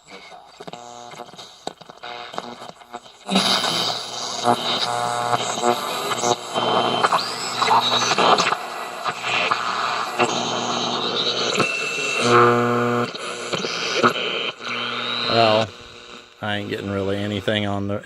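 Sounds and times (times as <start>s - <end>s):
radio static and hiss: 0.0s - 18.0s
buzzing hum: 0.6s - 17.7s.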